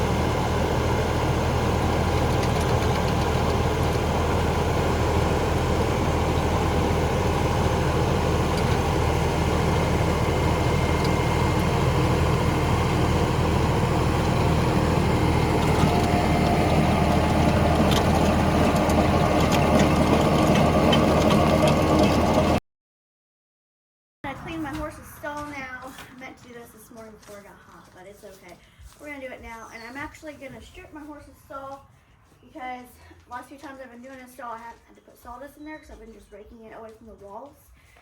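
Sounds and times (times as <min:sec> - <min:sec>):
engine running steadily: 0:00.0 - 0:22.6.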